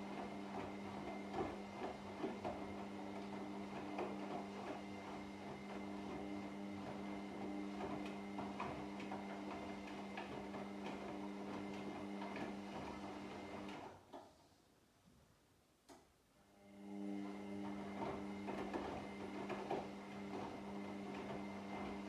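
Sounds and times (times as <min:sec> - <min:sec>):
washing machine motor humming: 0:16.8 - 0:22.0.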